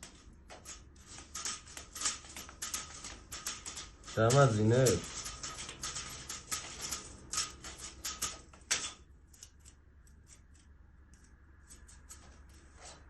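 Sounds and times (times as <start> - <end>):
rapid light clicks: 0.0 - 12.2.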